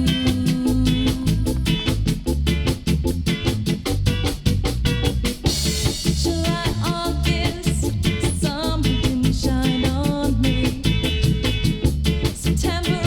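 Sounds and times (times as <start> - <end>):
person singing: 0.0 - 1.9, 6.1 - 11.0, 12.6 - 13.0
rocksteady music from vinyl: 0.0 - 13.0.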